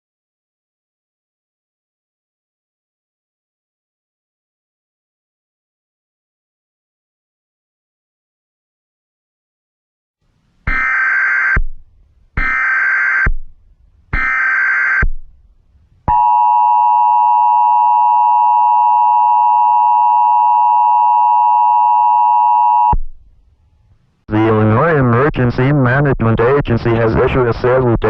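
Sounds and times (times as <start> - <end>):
screeching modem data bursts: 10.7 - 11.7, 12.4 - 13.4, 14.1 - 15.2.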